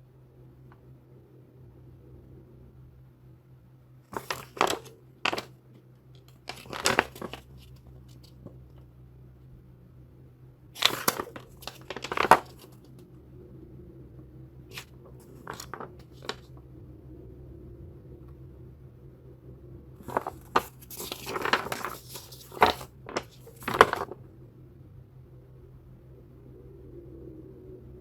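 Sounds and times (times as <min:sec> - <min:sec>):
paper and packaging rustling: 0:04.1 - 0:05.5, 0:06.2 - 0:08.5, 0:10.8 - 0:12.9, 0:14.7 - 0:16.5, 0:20.0 - 0:24.2.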